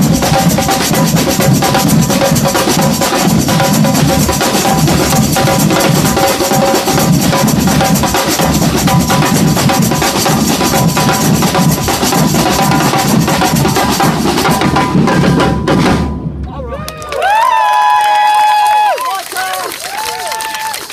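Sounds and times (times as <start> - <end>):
snare drums: 0.0 - 16.6
bass drums: 0.0 - 17.0
samba percussion band: 0.0 - 17.4.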